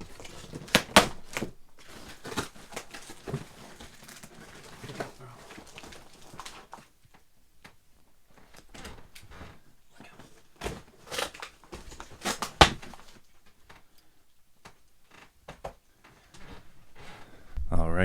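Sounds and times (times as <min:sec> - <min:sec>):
package being opened: 0:00.0 - 0:06.9, 0:10.2 - 0:13.3.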